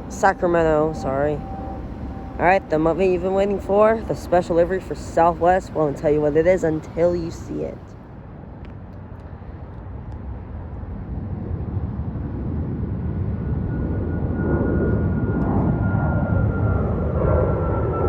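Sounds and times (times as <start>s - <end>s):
thin high whine falling in pitch: 0.0s - 6.6s
jet engines of departing airliner: 0.0s - 18.0s.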